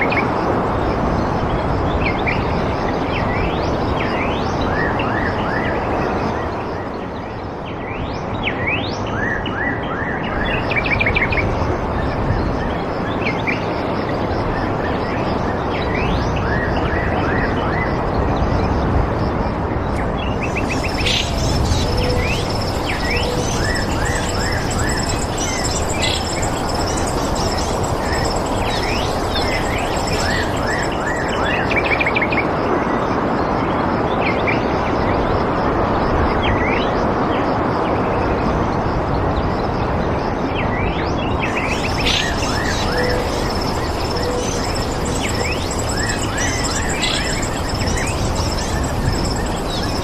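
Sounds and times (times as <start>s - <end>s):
insects trilling: 19.1s - 32.8s, 41.2s - 50.0s
bird chirps: 20.0s - 32.3s, 41.4s - 50.0s
steady rushing hiss: 20.1s - 32.1s, 41.5s - 50.0s.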